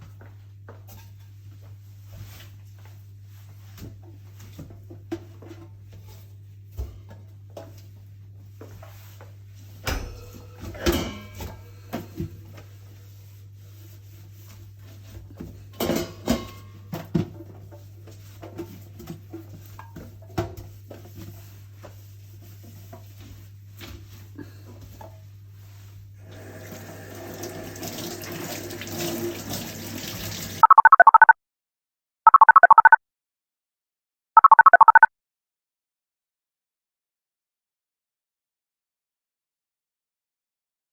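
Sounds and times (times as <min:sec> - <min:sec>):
dishes and utensils clattering: 0:09.9 - 0:12.2, 0:15.4 - 0:17.6.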